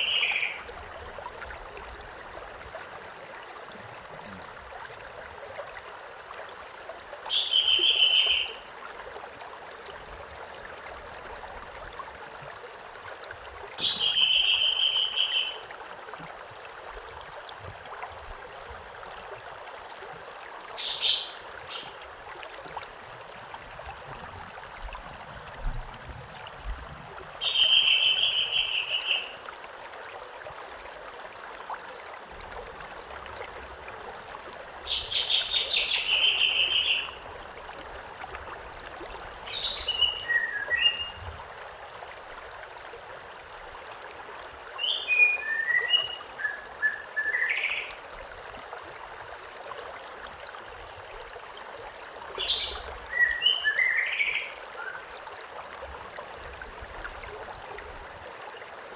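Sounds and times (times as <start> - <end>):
bird trilled call: 7.3 - 8.6, 13.8 - 15.6, 27.4 - 29.4.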